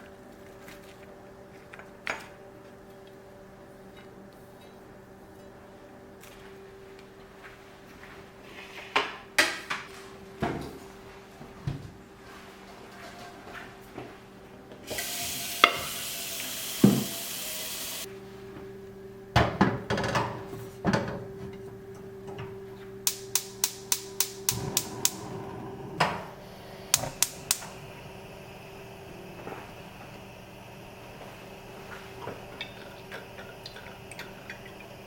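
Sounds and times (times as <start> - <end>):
low hum: 24.0 - 35.0
hissing rush: 24.5 - 31.8.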